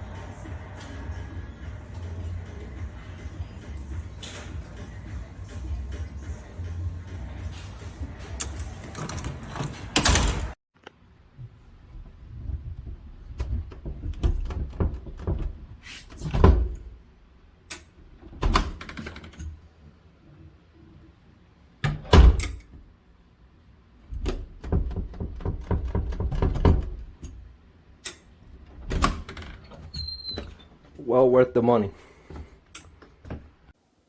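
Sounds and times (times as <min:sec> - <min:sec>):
door lock and handle rattling: 0:08.4 - 0:10.6
loud door thunks: 0:21.9 - 0:22.5.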